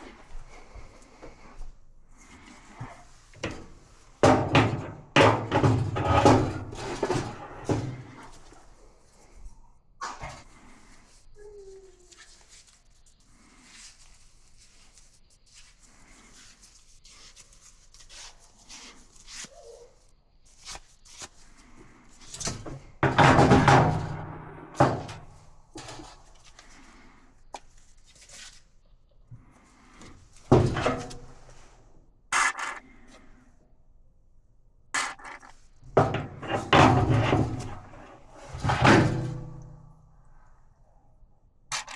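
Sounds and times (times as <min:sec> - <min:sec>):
dryer parts knocking: 0:03.4 - 0:08.2, 0:22.6 - 0:26.1, 0:36.0 - 0:39.6
rough scrape: 0:30.3 - 0:33.5, 0:35.0 - 0:39.4.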